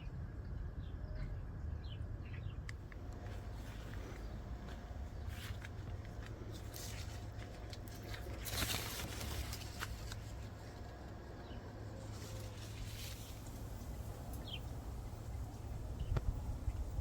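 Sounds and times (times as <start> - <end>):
steady low hum: 0.0 - 17.0
rustling and light scraping: 3.1 - 11.2, 11.9 - 14.5.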